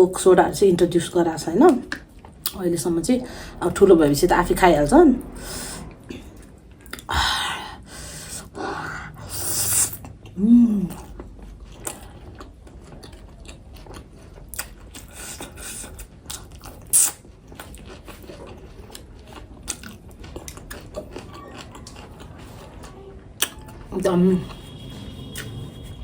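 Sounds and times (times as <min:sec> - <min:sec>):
chewing and biting: 0:09.8 - 0:26.0.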